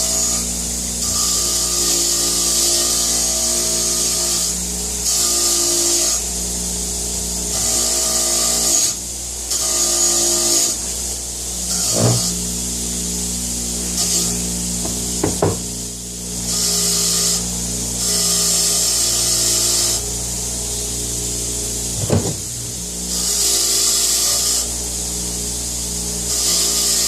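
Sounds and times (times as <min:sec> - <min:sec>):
wire wheel scrubbing steel: 0:11.7 - 0:12.5
knock: 0:11.9 - 0:12.3, 0:14.8 - 0:15.7, 0:22.0 - 0:22.4.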